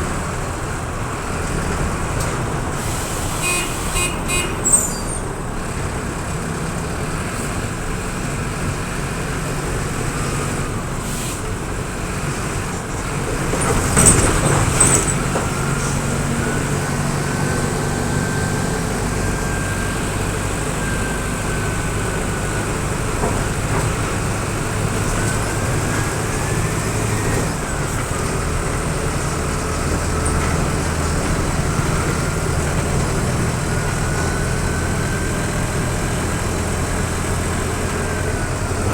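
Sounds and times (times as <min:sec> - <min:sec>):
bus diesel engine running: 0:00.0 - 0:38.9.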